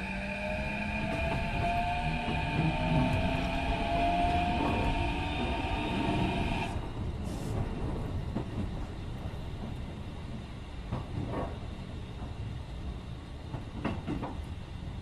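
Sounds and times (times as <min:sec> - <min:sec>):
train motor whine: 0:00.0 - 0:06.9
wheel and track rumble: 0:00.0 - 0:14.5.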